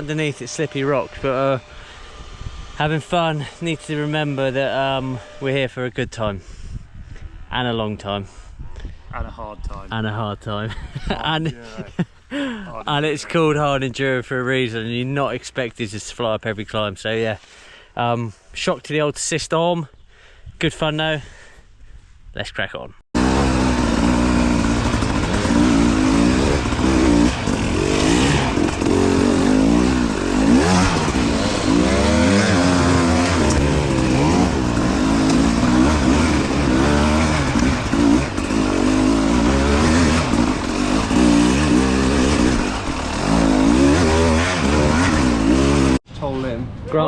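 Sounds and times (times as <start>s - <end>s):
motorcycle engine revving: 0.0s - 5.7s, 23.2s - 46.0s.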